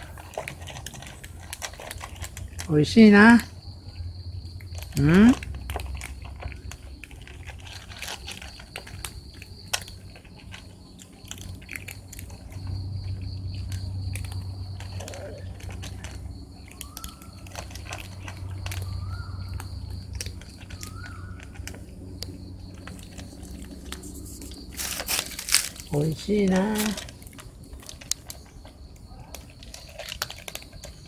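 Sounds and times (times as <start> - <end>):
cats chewing and crunching food: 0.0 - 31.0
low hum: 3.5 - 29.0.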